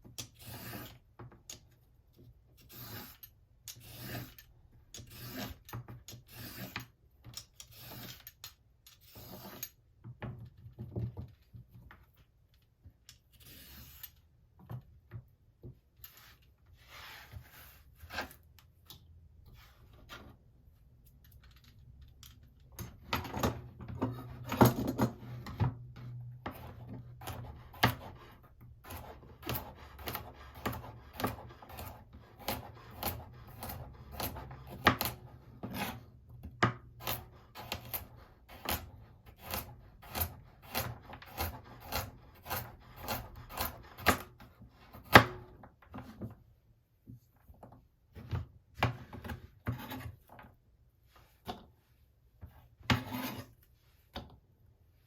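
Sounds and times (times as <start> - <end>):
knife scraping: 0.2 - 1.0, 2.6 - 9.8, 13.3 - 14.2, 16.0 - 18.5, 26.5 - 36.1, 37.0 - 45.2, 49.7 - 50.2, 52.8 - 53.7
knife chopping on wooden board: 28.9 - 36.0, 36.6 - 45.4.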